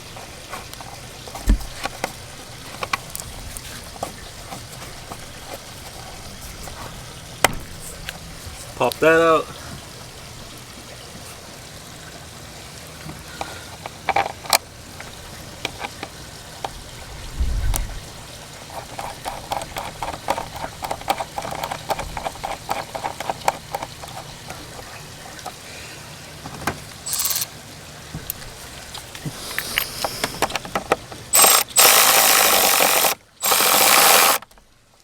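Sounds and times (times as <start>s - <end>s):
hand ratchet clicking: 18.7s - 24.3s, 27.1s - 27.5s, 31.3s - 34.5s.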